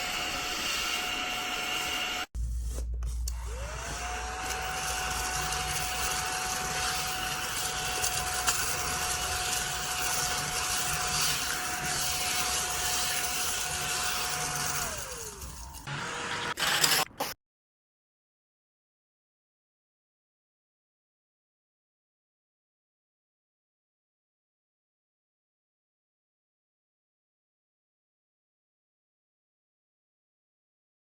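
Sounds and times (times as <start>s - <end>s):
small vacuum cleaner motor whine: 0.0s - 2.3s, 3.1s - 17.0s.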